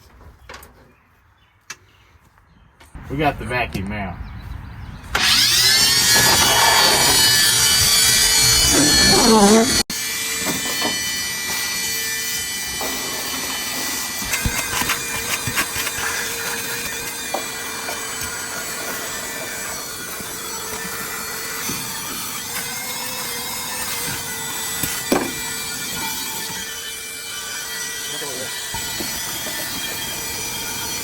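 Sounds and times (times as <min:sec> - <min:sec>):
vacuum cleaner whining: 0:05.2 - 0:31.0.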